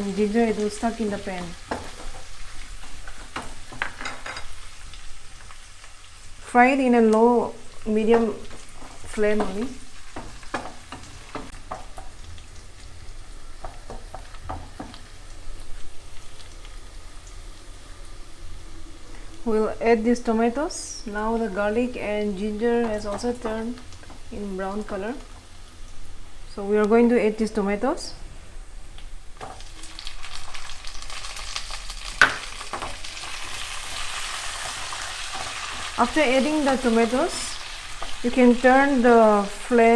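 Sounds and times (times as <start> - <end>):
onions sizzling in a pan: 0.0 - 39.9
spatula scraping a pan: 1.5 - 4.6, 8.1 - 12.3.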